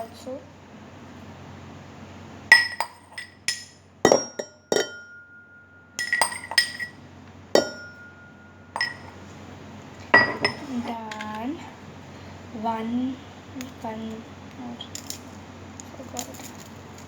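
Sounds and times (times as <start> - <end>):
spoon clinking against glass: 2.5 - 7.0, 7.6 - 9.2, 10.2 - 10.6.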